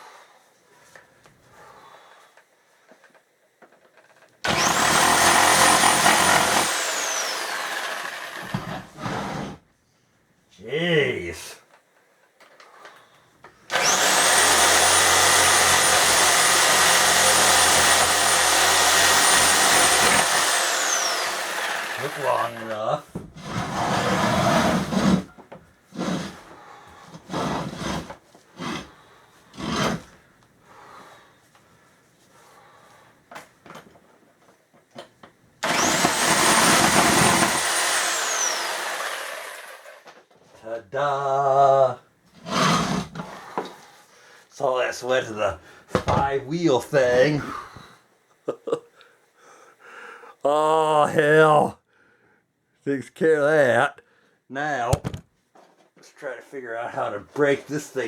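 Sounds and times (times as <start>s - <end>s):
electric saw motor whining: 4.5s - 8.8s, 13.7s - 22.4s, 35.6s - 40.0s
rough scraping strokes by hand: 8.9s - 9.6s, 23.4s - 30.2s, 42.4s - 44.1s.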